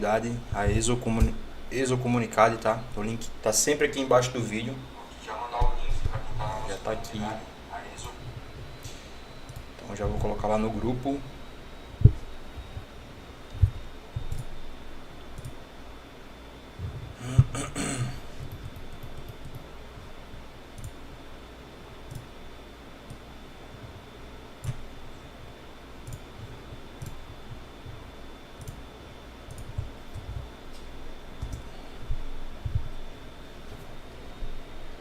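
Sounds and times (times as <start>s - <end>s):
computer mouse clicks: 9.4s - 9.7s, 13.5s - 14.5s, 15.4s - 15.6s, 20.8s - 21.0s, 22.1s - 22.3s, 24.6s - 24.8s, 26.0s - 27.2s, 28.6s - 28.8s, 29.5s - 30.4s, 31.4s - 31.7s.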